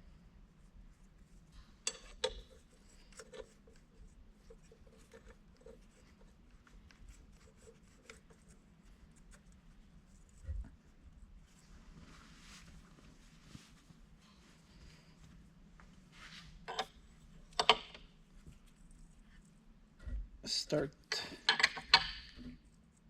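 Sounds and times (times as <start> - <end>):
hand tools and metal parts clicking: 1.8 - 3.5, 16.7 - 18.0, 21.1 - 22.4.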